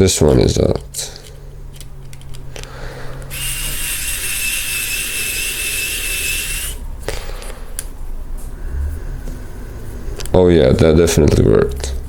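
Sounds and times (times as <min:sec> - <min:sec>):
electric screwdriver whirring: 0:03.3 - 0:06.8.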